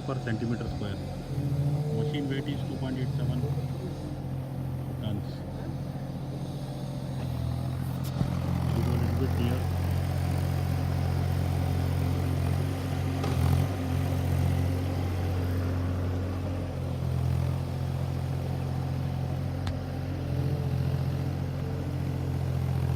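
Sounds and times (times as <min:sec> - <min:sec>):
excavator diesel engine running: 0:00.0 - 0:22.9.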